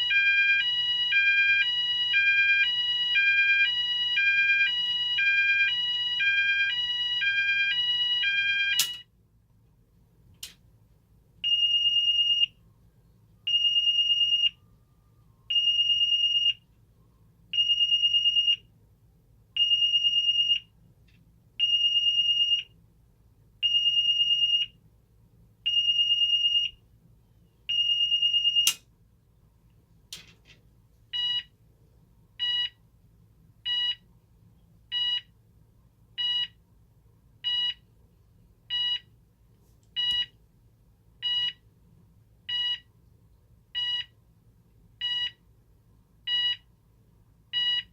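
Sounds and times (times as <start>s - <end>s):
fire alarm steady tone pulsing: 0.0s - 9.0s
harsh alarm beeps: 0.0s - 9.0s.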